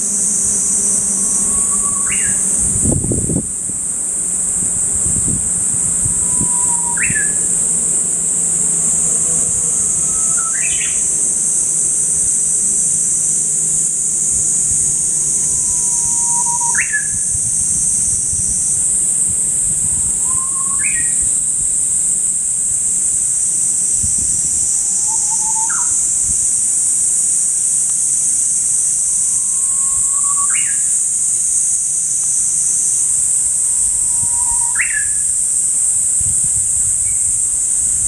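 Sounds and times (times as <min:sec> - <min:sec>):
high-pitched hiss: 0:00.0 - 0:38.0
bird singing whistle-like song: 0:00.7 - 0:02.6, 0:06.2 - 0:07.6, 0:09.8 - 0:11.2, 0:15.5 - 0:17.3, 0:20.0 - 0:21.4, 0:24.8 - 0:26.2, 0:29.3 - 0:31.0, 0:34.0 - 0:35.3.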